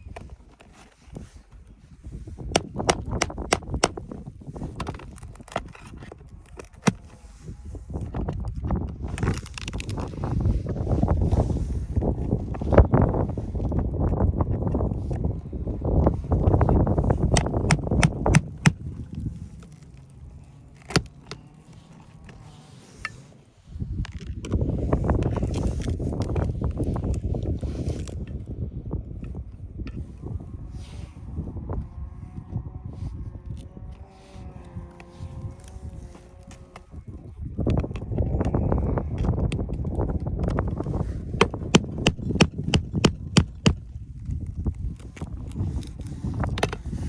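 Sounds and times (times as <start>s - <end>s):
wind rumble on microphone: 0.0s - 47.0s
metal tools clicking on shingles: 9.2s - 10.3s, 41.4s - 43.8s
pry bar metal taps: 17.4s - 18.8s, 41.4s - 43.8s.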